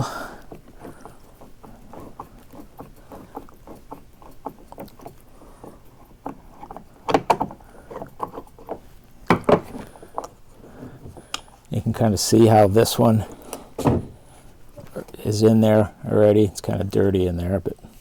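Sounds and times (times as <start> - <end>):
screws clicking and scraping: 0.0 - 11.8
plastic knocks: 7.0 - 11.3, 13.7 - 14.9.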